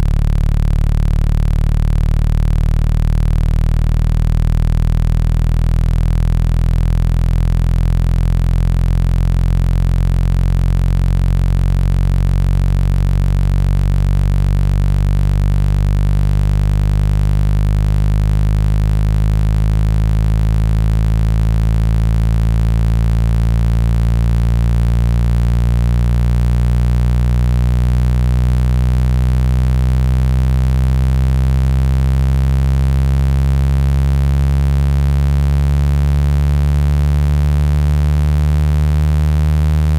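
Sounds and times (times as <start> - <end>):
low buzzing tone rising in pitch: 0.0 - 39.9.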